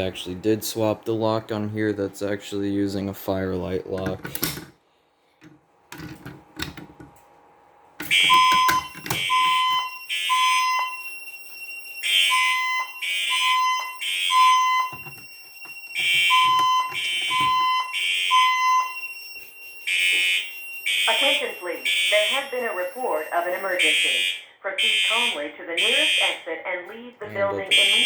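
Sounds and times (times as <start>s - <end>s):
fire alarm horns pulsing: 8.0s - 28.0s.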